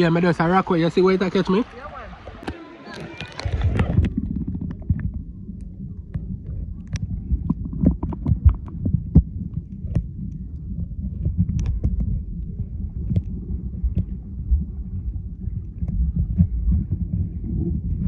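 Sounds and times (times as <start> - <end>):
muffled underwater river rumble: 2.1 - 18.0
underwater clicks and knocks: 2.2 - 14.2.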